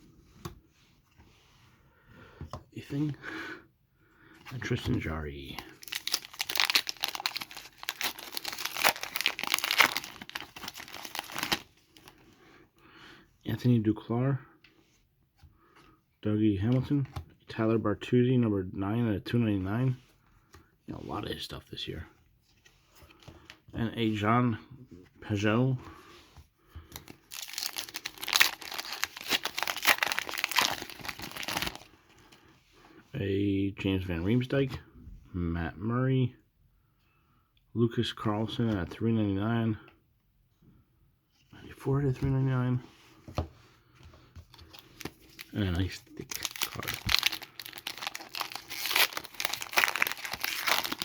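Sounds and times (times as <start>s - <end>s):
plastic packaging crinkling: 5.4s - 12.1s, 27.0s - 31.9s, 44.5s - 51.0s.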